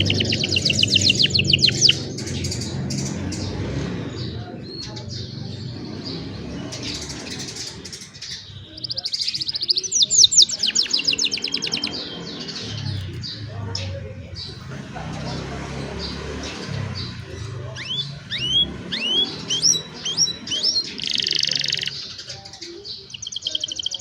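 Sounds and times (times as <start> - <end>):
canaries chirping and trilling: 0.0 - 24.0.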